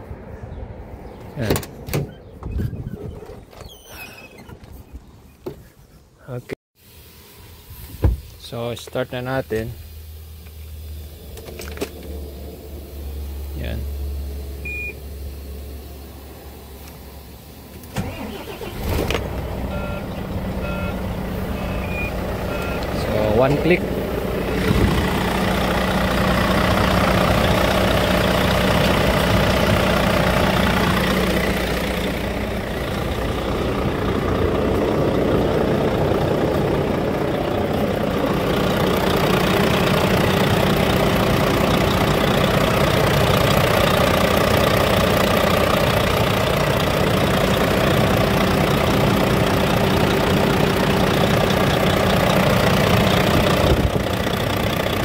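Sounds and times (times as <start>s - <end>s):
truck diesel engine idling: 12.1s - 55.0s.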